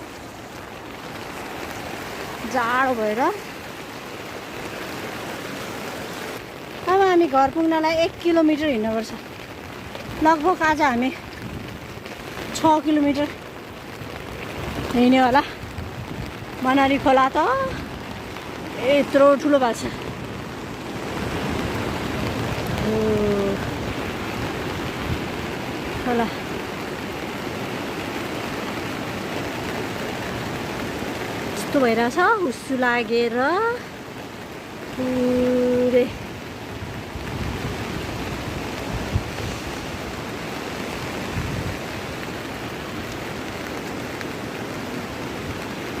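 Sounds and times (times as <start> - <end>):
rain: 0.0 - 46.0
river rushing: 0.0 - 46.0
wind buffeting microphone: 9.7 - 12.6, 14.0 - 26.6, 35.2 - 42.3.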